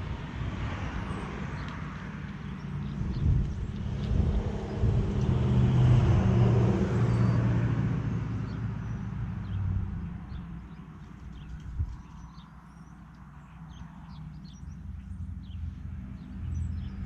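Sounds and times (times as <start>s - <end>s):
vehicle engine passing by: 0.0s - 12.1s.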